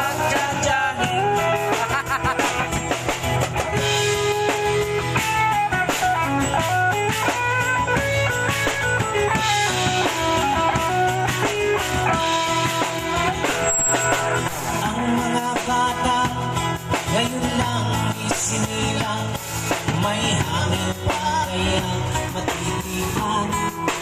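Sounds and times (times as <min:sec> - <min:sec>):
guitar melody: 0:00.0 - 0:18.0
bass line: 0:00.0 - 0:24.0
drum beat: 0:00.0 - 0:24.0.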